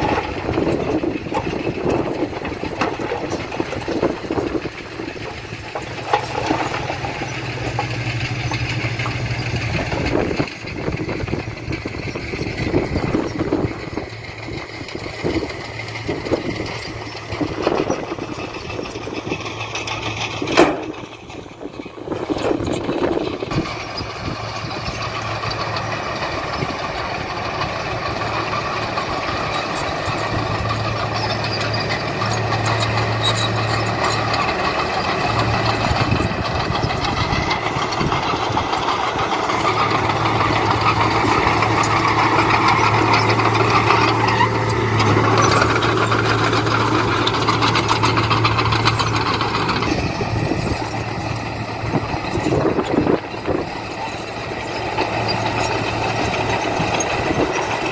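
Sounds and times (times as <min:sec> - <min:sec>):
metal clunks and knocks: 0:00.0 - 0:11.2, 0:19.8 - 0:21.5
heavy machinery diesel engine: 0:00.0 - 0:57.9.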